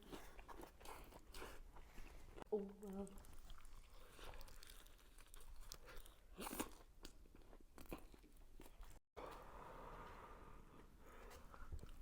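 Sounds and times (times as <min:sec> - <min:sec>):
chewing and crunching food: 0:00.0 - 0:09.0.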